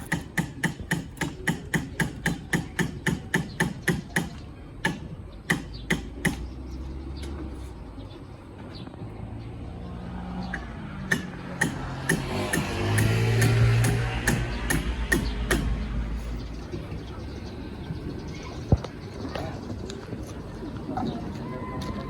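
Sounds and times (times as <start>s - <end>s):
sharp knocks: 10.5s - 15.9s.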